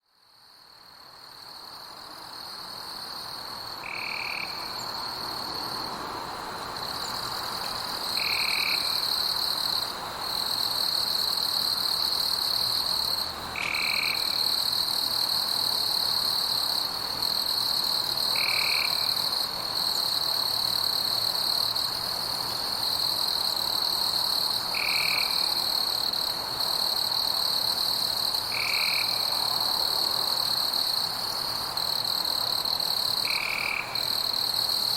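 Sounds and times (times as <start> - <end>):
high-pitched insect chorus: 0.2 - 34.9.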